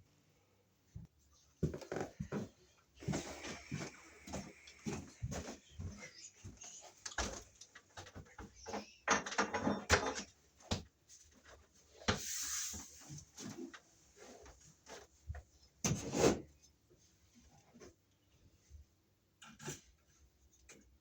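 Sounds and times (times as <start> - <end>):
scraping hiss: 12.1 - 13.2.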